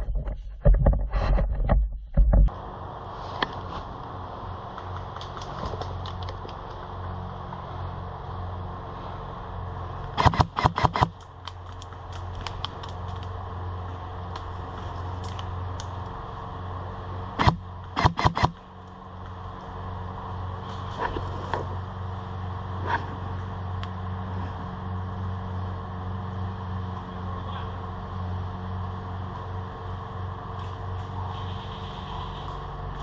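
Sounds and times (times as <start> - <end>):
steady low hum: 0.0 - 33.0
airsoft gunfire bursts: 10.2 - 11.1, 17.4 - 18.6.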